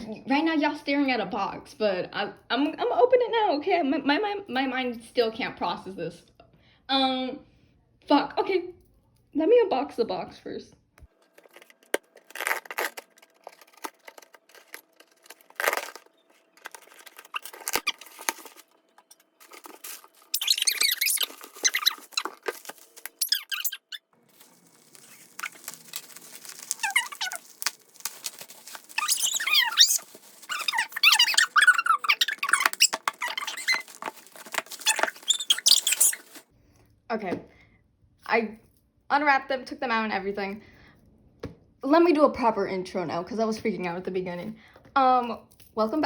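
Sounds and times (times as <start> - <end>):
packaging clicks: 11.2 - 36.4
plastic shrink-wrap crinkling: 11.2 - 36.4
cardboard box being torn: 11.4 - 18.6, 19.4 - 23.2, 24.3 - 36.4.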